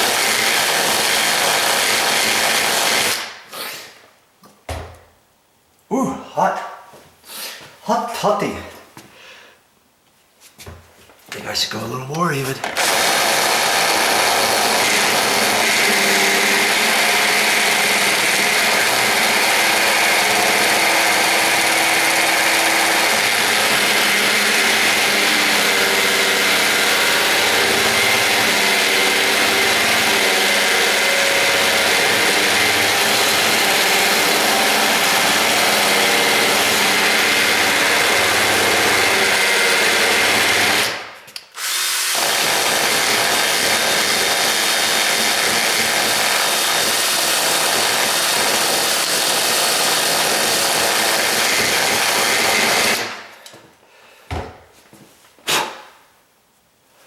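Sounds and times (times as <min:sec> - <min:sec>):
power drill cutting into wood: 0:00.0 - 0:03.4, 0:12.6 - 0:53.3.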